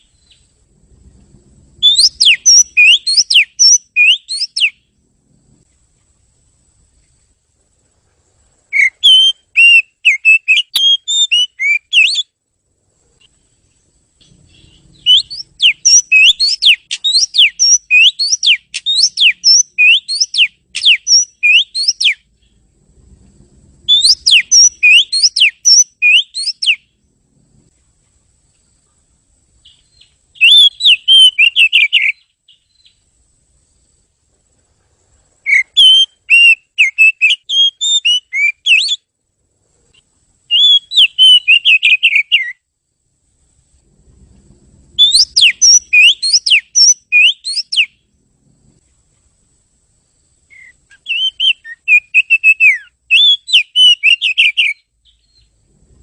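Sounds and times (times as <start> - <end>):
bird singing whistled phrases: 1.8 - 4.8, 8.7 - 12.3, 14.5 - 22.2, 23.9 - 26.9, 29.6 - 33.0, 35.4 - 39.0, 40.5 - 42.6, 45.0 - 48.0, 50.5 - 55.5.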